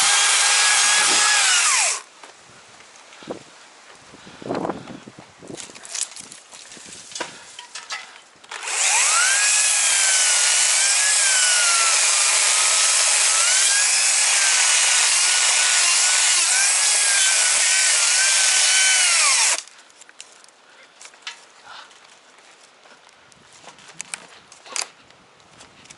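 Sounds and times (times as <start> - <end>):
chainsaw cutting tree trunk: 0.0 - 2.1, 8.5 - 19.7.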